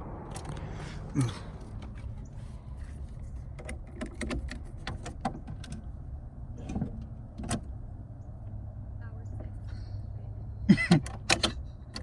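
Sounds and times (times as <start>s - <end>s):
steady low rumble: 0.0s - 4.0s.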